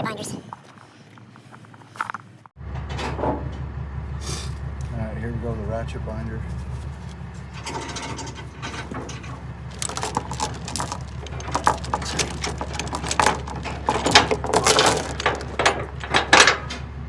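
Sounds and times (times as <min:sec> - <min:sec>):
metal chain clinking and rattling: 0:07.6 - 0:16.6.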